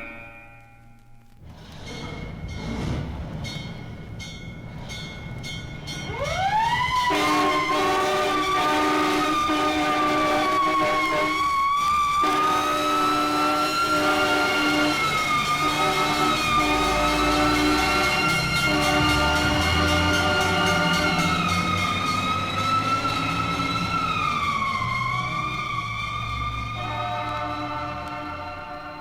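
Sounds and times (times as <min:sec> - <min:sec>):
siren wailing: 0:06.0 - 0:29.0
multi-note horn chord: 0:15.6 - 0:21.3.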